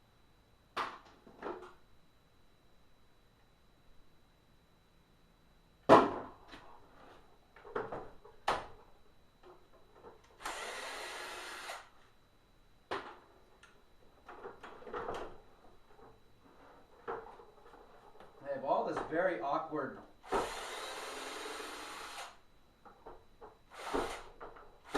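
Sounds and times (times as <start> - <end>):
steady hissing whir: 8.6 - 14.4, 15.3 - 24.9.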